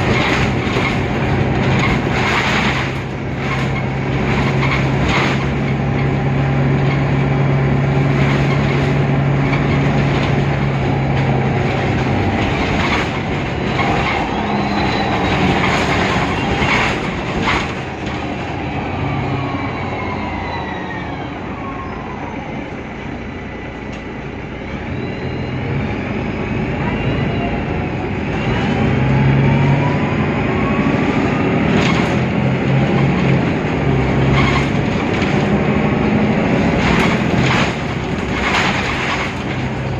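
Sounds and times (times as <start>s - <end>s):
gearbox whining tones: 0.0s - 22.4s
bus engine low drone: 0.0s - 39.9s.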